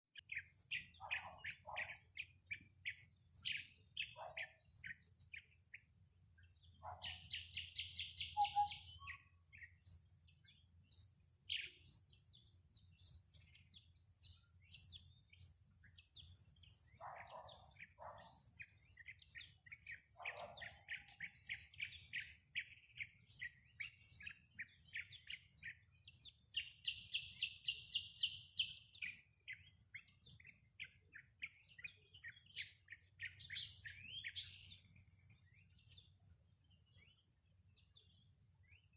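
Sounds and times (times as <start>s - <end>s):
birds chirping and singing: 0.2s - 38.9s
low short bird calls: 6.8s - 9.4s.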